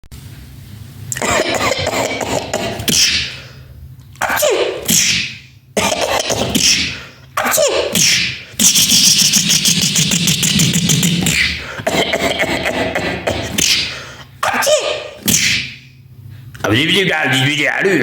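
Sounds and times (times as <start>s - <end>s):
person making vocal noises: 1.2s - 3.4s, 4.2s - 15.5s
person fake sneezing: 1.2s - 3.5s, 4.2s - 9.1s, 10.4s - 15.8s.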